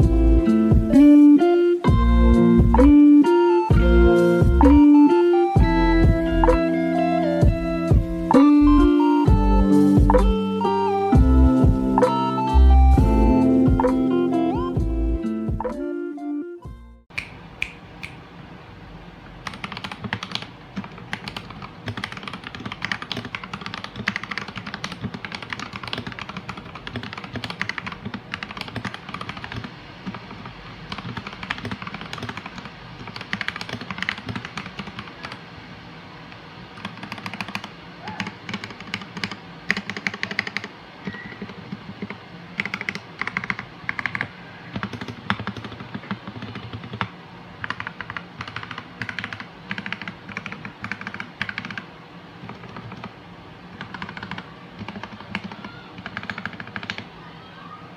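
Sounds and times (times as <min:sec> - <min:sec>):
mechanical keyboard typing: 0:19.4 - 0:35.4, 0:36.8 - 0:57.1.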